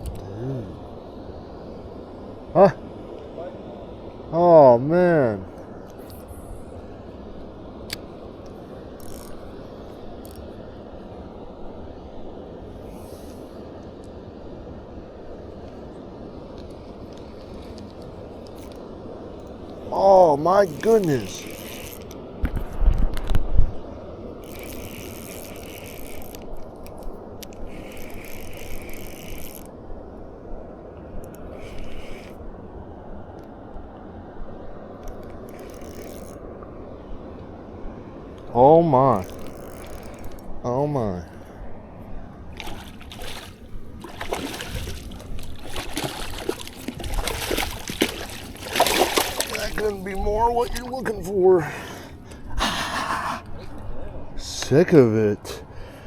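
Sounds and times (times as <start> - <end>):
fishing reel ratcheting: 9.0 - 9.4, 20.6 - 22.2, 24.4 - 29.7, 31.6 - 32.4, 35.1 - 36.4, 39.1 - 40.5
water splashing and sloshing: 15.6 - 23.8, 38.4 - 52.5.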